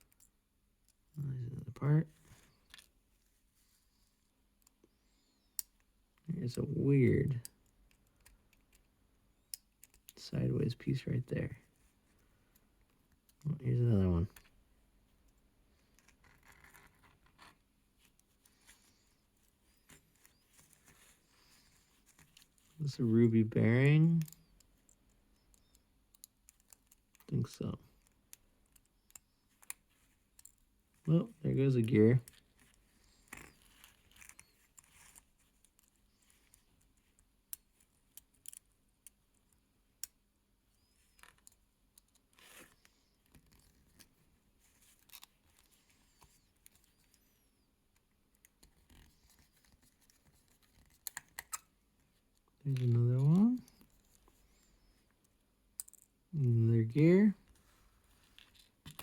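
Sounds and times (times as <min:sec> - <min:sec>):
small clicks of watch parts: 0:00.0 - 0:01.2, 0:02.3 - 0:03.0, 0:04.5 - 0:06.3, 0:07.4 - 0:10.2, 0:12.1 - 0:13.5, 0:24.0 - 0:31.1, 0:31.9 - 0:56.2, 0:58.2 - 0:59.0.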